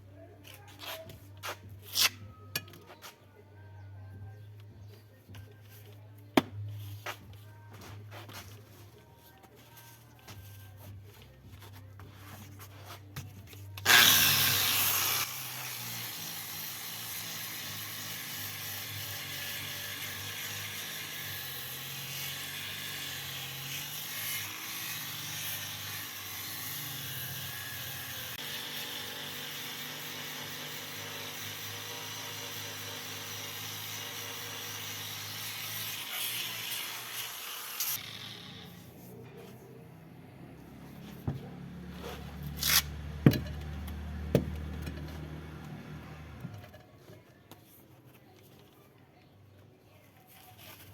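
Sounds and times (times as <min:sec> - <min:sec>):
angle grinder polishing stone: 0:13.9 - 0:38.9.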